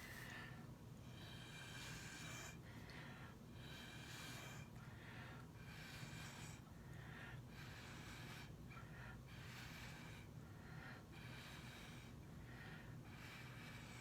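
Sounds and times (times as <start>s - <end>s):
puffs of air through a straw: 0.0s - 0.4s.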